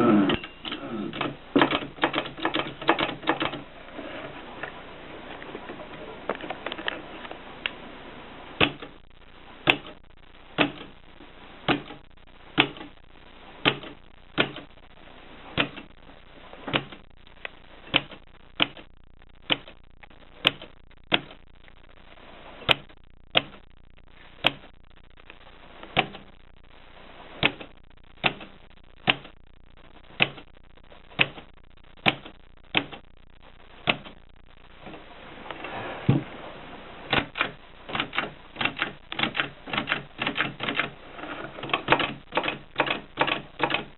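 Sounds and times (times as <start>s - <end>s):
typewriter key strikes: 37.1s - 40.9s, 41.7s - 43.9s.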